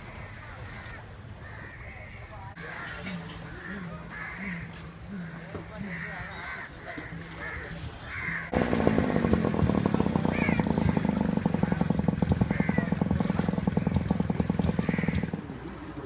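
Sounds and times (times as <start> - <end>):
small engine running: 8.5 - 16.0.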